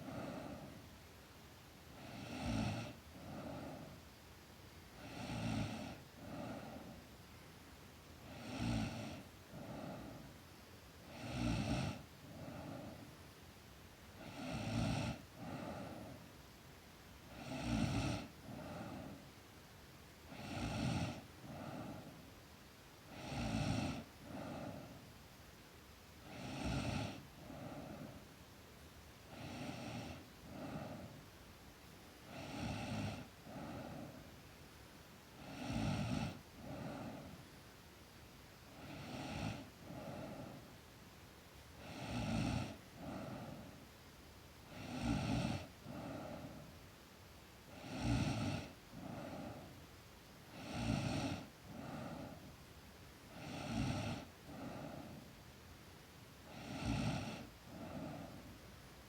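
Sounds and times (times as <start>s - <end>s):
girl snoring: 0.0s - 0.8s, 1.9s - 4.0s, 5.0s - 7.0s, 8.2s - 10.3s, 11.1s - 13.1s, 14.2s - 16.2s, 17.3s - 19.3s, 20.3s - 22.3s, 23.1s - 25.0s, 26.2s - 28.2s, 29.3s - 31.2s, 32.2s - 34.3s, 35.4s - 37.4s, 38.7s - 40.7s, 41.8s - 43.8s, 44.7s - 46.7s, 47.7s - 49.8s, 50.5s - 52.5s, 53.3s - 55.3s, 56.4s - 58.6s.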